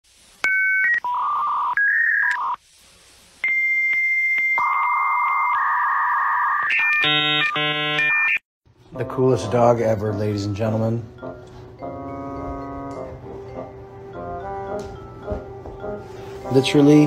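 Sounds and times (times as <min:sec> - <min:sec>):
synthesized tones: 0:09.4 - 0:16.6.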